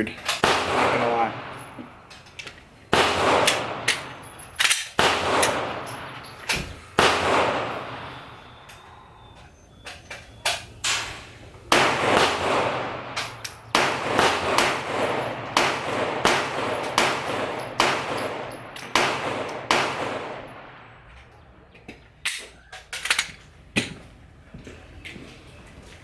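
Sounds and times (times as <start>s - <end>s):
echoing gunshots: 0.0s - 2.1s, 2.9s - 9.0s, 10.8s - 21.1s.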